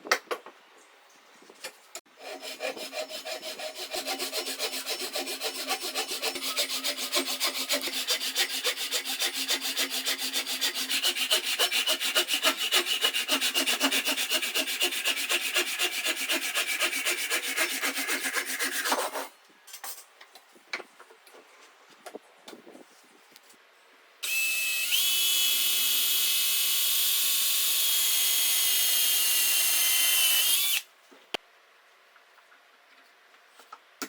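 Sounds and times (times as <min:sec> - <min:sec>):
hand tool sawing wood: 0:02.1 - 0:19.3, 0:28.1 - 0:30.8.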